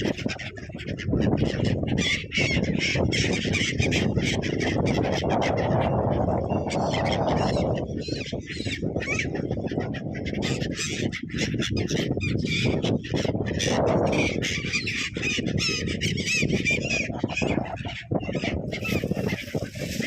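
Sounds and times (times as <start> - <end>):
flock of birds squawking and honking: 0.0 - 20.0.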